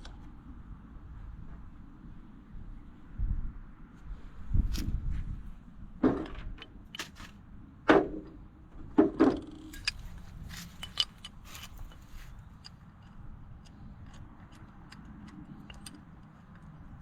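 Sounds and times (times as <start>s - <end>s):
metal pipe fittings clinking: 9.3s - 16.7s.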